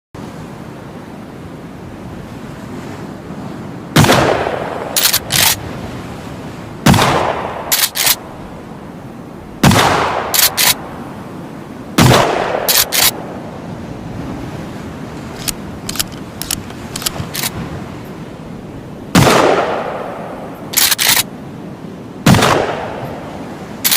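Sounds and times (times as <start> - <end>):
shotgun shots: 4.0 - 5.6, 6.8 - 8.2, 9.6 - 10.8, 12.0 - 13.1, 19.2 - 20.0, 22.3 - 23.0
shotgun pump clacks: 5.0 - 5.6, 7.7 - 8.2, 10.4 - 10.8, 12.7 - 13.1, 15.4 - 17.5, 20.8 - 21.2.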